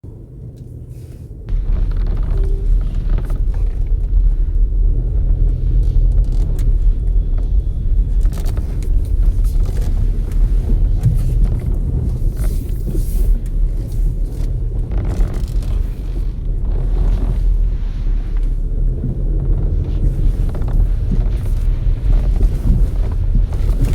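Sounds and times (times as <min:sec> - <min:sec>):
car road rumble: 0:00.0 - 0:23.9
rubber squeaks and creaks: 0:01.5 - 0:13.0, 0:14.3 - 0:23.9.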